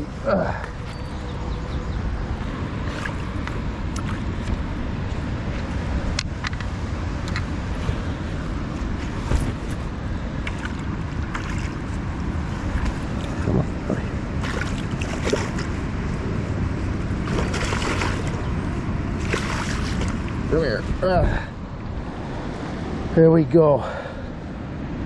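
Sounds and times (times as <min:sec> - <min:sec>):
wind buffeting microphone: 0:00.0 - 0:23.2
river water rushing: 0:06.8 - 0:20.5.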